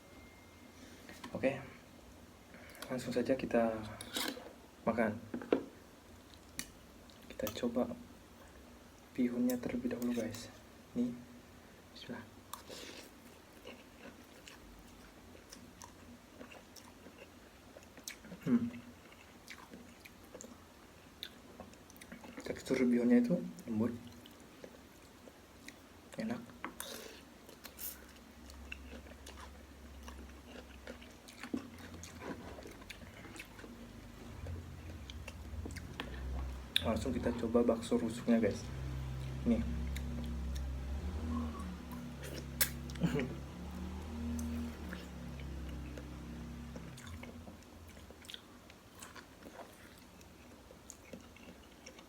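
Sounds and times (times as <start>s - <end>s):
low steady hum: 0.0s - 52.0s
chewing soft noodles: 12.5s - 22.7s, 23.6s - 37.5s, 38.7s - 52.0s
wet mouth clicks: 42.2s - 43.0s.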